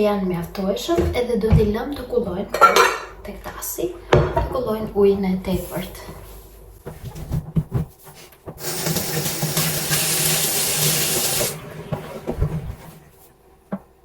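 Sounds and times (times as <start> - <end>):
kitchenware clatter: 2.5 - 3.2
kitchenware knocking: 2.6 - 3.2
water running from tap into sink: 8.6 - 11.6.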